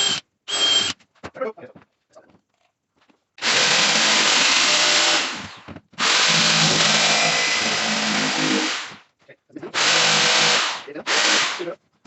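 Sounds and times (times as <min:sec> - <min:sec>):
power tool running: 0:06.0 - 0:08.9, 0:09.8 - 0:11.6.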